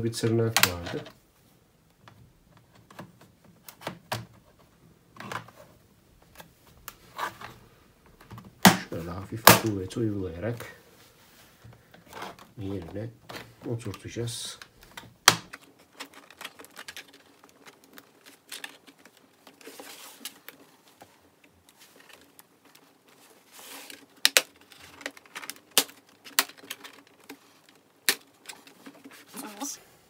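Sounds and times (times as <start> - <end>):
soft rubbing and handling: 0.2 - 30.0
plastic clips snapping into place: 14.6 - 17.3.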